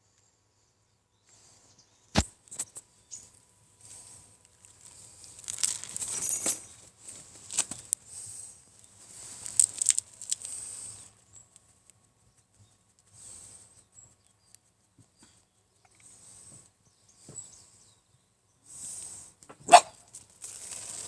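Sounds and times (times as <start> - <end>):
puppies rustling in bedding: 3.8 - 7.9.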